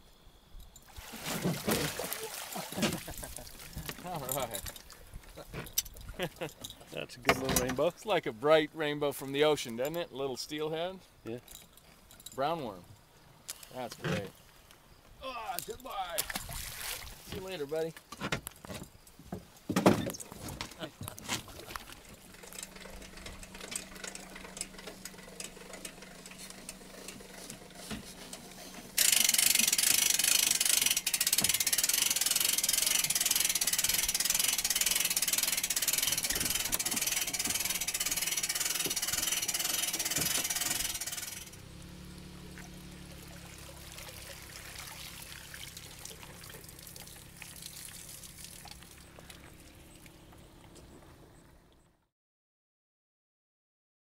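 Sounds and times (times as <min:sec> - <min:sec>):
rushing river water: 0:00.9 - 0:04.1, 0:42.4 - 0:49.3.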